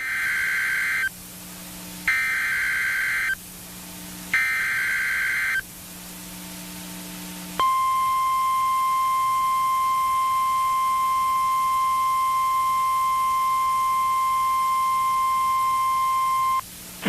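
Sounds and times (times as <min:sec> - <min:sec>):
buzzing data squawks: 0:00.0 - 0:01.1, 0:02.0 - 0:03.4, 0:04.3 - 0:05.6, 0:07.6 - 0:16.6
steady warning alarm tone: 0:00.0 - 0:01.2, 0:02.0 - 0:03.4, 0:04.3 - 0:05.6, 0:07.6 - 0:16.6.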